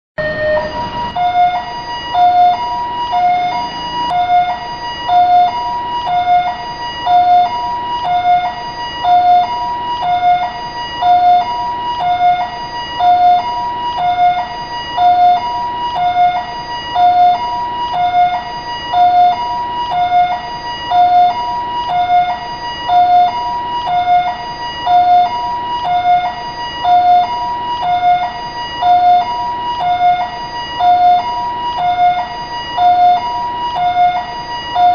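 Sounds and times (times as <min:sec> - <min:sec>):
two-tone ambulance siren: 0:00.2 - 0:34.9.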